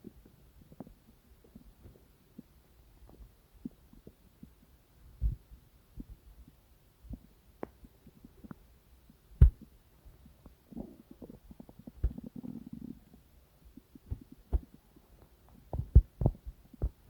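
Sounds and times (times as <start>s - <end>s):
faint low hum: 0.0s - 17.0s
stomach gurgling: 10.7s - 14.8s.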